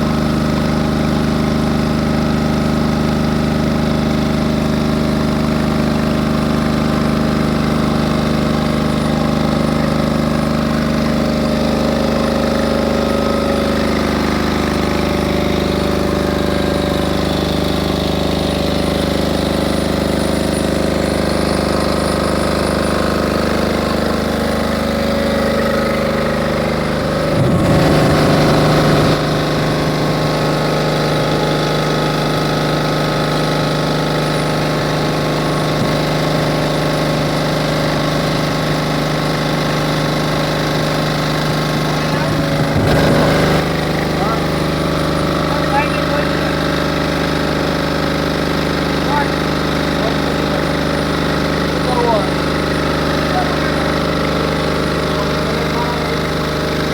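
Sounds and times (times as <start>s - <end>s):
diesel generator clattering: 0.0s - 56.9s.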